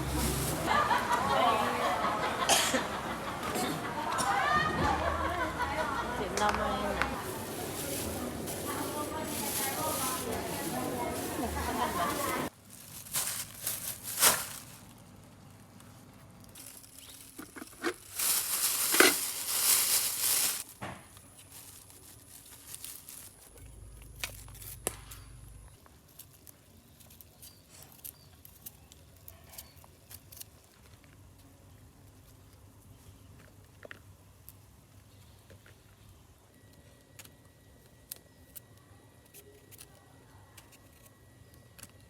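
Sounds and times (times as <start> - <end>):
crinkling and rustling: 0.0 - 0.9, 6.4 - 34.6.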